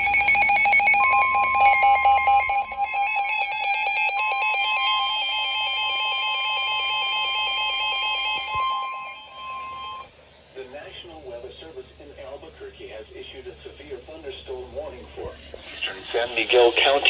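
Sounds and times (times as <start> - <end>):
chopping digital data tones: 0.0 - 10.1
steady alert tone: 0.0 - 10.1.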